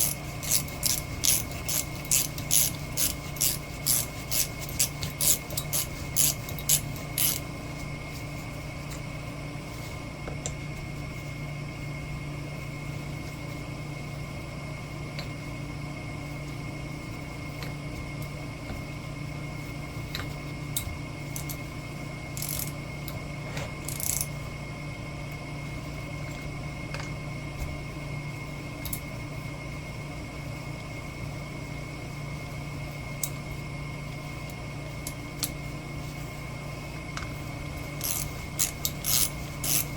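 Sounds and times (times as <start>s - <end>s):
ratchet wrench clicking: 0.0s - 7.4s, 22.4s - 22.7s, 23.8s - 24.3s, 38.0s - 39.9s
workshop hum with high whine: 0.0s - 39.9s.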